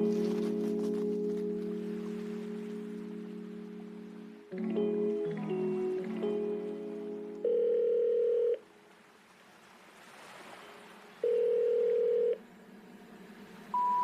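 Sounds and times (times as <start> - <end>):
telephone ringback beeps: 7.4 - 8.6, 11.2 - 12.4, 13.8 - 14.0.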